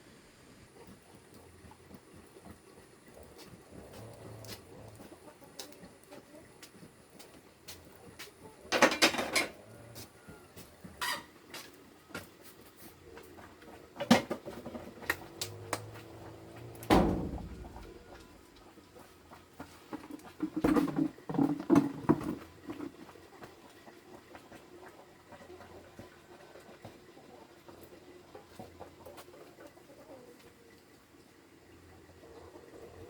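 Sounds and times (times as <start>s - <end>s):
objects knocking and clattering: 8.7s - 9.6s, 19.9s - 22.9s.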